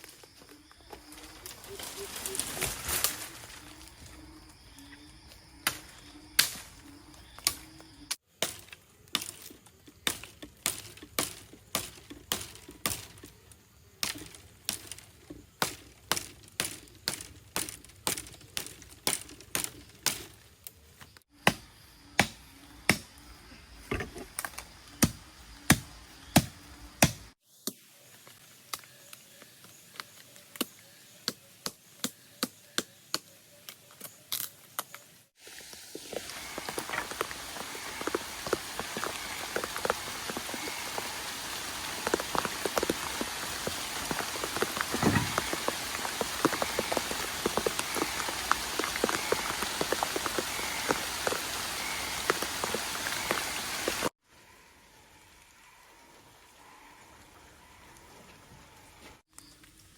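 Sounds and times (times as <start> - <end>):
chopping strikes: 21.4 - 23.2, 25.0 - 27.3.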